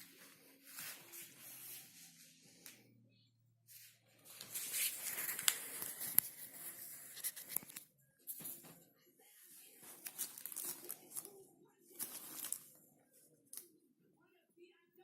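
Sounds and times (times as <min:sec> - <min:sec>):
packaging rustling and crinkling: 0:04.3 - 0:07.8, 0:09.8 - 0:12.8.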